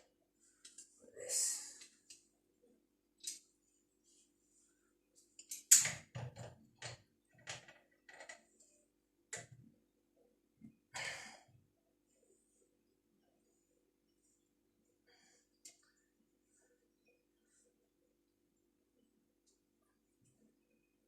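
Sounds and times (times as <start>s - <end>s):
pipe fittings knocking and clicking: 5.4s - 8.5s.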